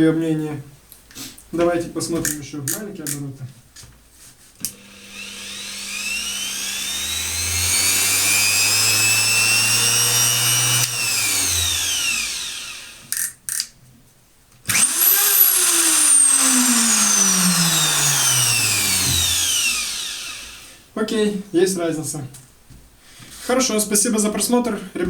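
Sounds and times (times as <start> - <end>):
electric router motor whine: 4.6 - 13.2, 14.7 - 20.8.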